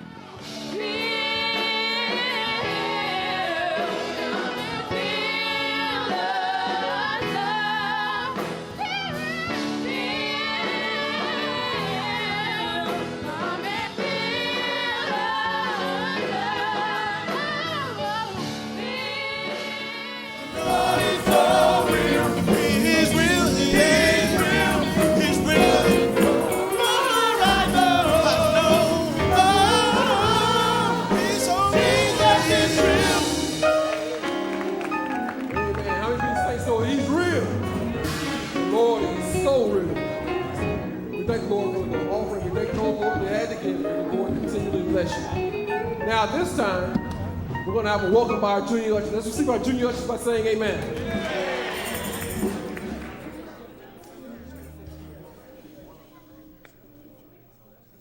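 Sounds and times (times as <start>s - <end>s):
gospel choir singing: 0.0s - 35.4s, 50.9s - 53.9s
instrumental accompaniment: 20.2s - 49.7s.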